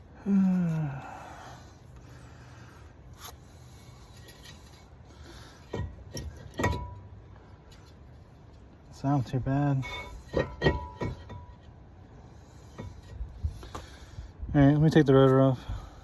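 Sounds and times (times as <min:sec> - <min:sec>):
metal tools clanking: 0:04.0 - 0:08.1, 0:09.2 - 0:11.8.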